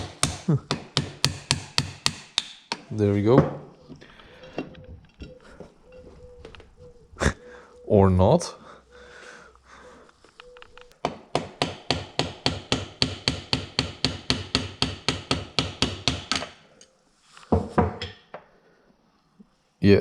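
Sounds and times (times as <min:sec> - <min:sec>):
hammer tapping on metal: 0:00.0 - 0:02.8, 0:11.0 - 0:16.5.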